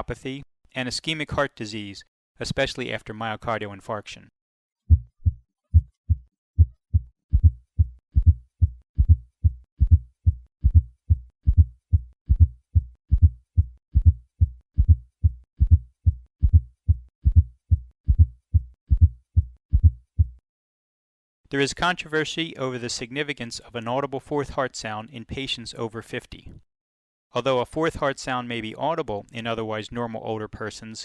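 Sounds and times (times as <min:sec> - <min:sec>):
heartbeat through stethoscope: 0:04.9 - 0:20.4.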